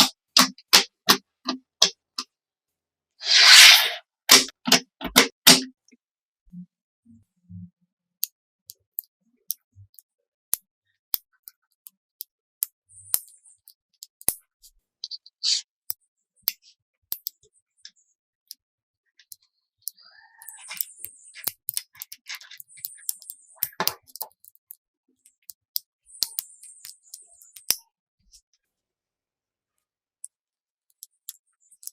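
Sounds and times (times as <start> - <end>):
small parts clicking and tapping: 0.0 - 2.3, 8.2 - 28.7, 30.2 - 31.9
short scrapes: 3.2 - 4.5.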